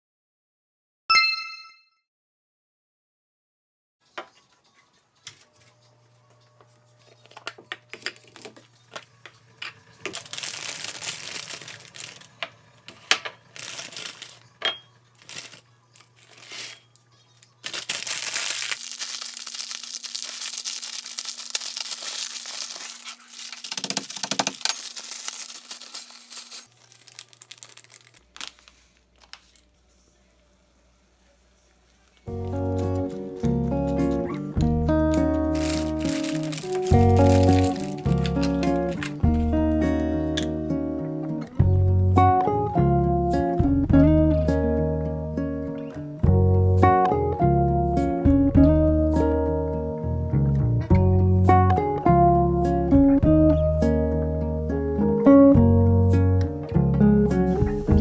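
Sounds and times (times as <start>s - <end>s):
plastic packaging crinkling and tearing: 7.0s - 29.8s, 32.2s - 40.5s, 57.4s - 58.0s
dense rustling: 32.3s - 39.7s.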